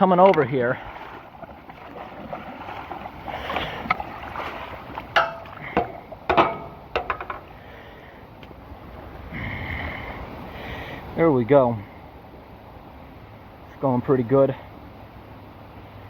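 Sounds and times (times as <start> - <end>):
sharp knocks and splashes: 0.0 - 7.6
water pouring into storm drain: 0.0 - 7.7.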